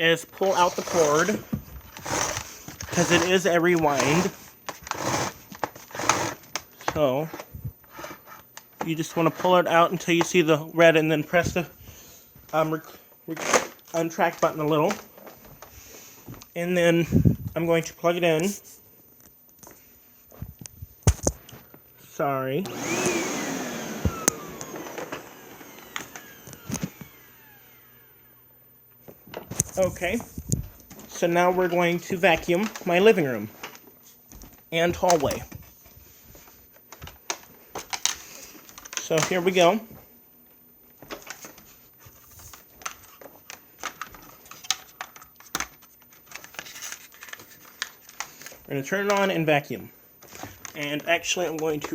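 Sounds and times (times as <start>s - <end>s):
vacuum motor spinning down: 0.6s - 1.4s, 2.0s - 6.4s, 22.6s - 28.7s.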